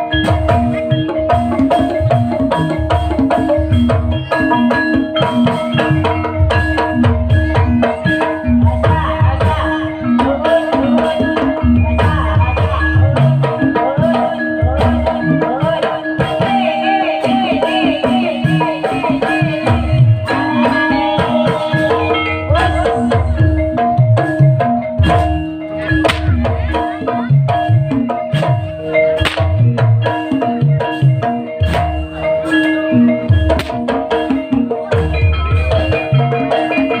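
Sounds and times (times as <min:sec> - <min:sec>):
ringing metallophone tones: 0:00.0 - 0:37.0
hand drum strokes: 0:18.8 - 0:37.0.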